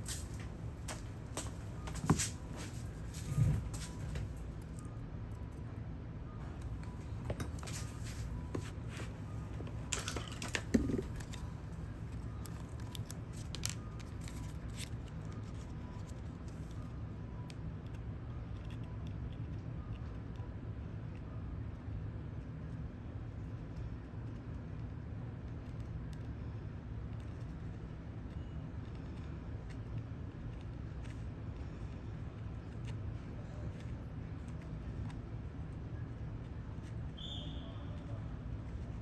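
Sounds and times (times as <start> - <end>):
tools clicking and scraping: 0.0 - 4.9, 6.5 - 11.4
steady low hum: 0.0 - 17.5.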